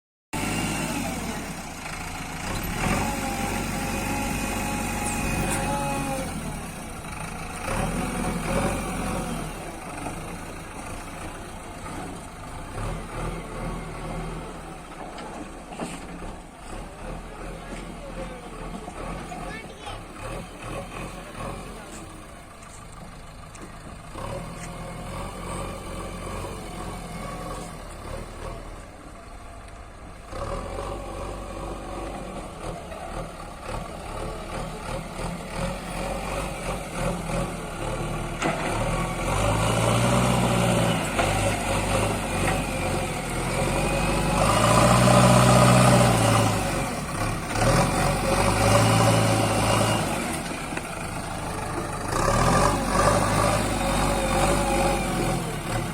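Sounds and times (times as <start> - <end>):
diesel engine revving: 0.3 - 55.9.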